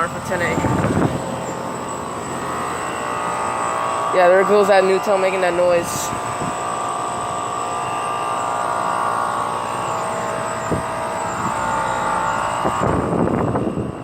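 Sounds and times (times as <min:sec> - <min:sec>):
person talking: 0:00.0 - 0:01.0, 0:04.1 - 0:06.2
heat pump droning whine: 0:00.0 - 0:14.0.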